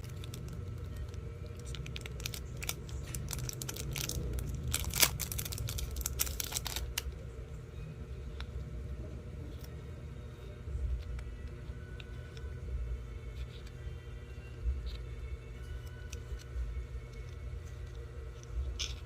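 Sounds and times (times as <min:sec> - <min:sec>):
packaging crinkling and tearing: 0:00.0 - 0:07.1
steady low hum: 0:00.0 - 0:19.0.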